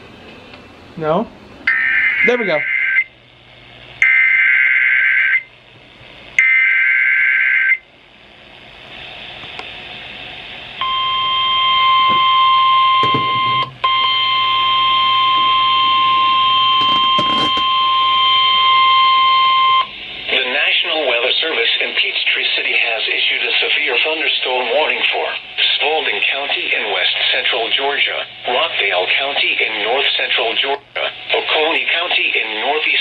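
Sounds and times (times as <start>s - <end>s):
steady warning alarm tone: 1.6s - 3.2s, 4.0s - 5.5s, 6.4s - 7.9s, 10.7s - 21.8s.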